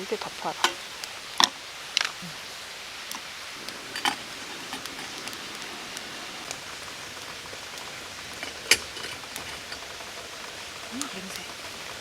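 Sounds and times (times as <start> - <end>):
wood fire crackling: 0.0 - 12.0
loud pop of fire: 3.1 - 10.0.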